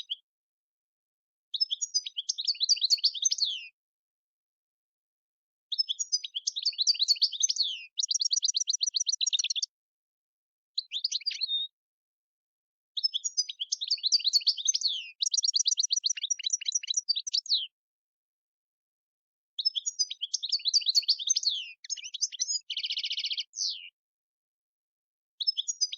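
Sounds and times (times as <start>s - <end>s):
goldfinch twittering song: 1.6s - 3.7s, 5.7s - 9.7s, 10.8s - 11.7s, 13.0s - 17.8s, 19.6s - 24.0s, 25.4s - 25.9s.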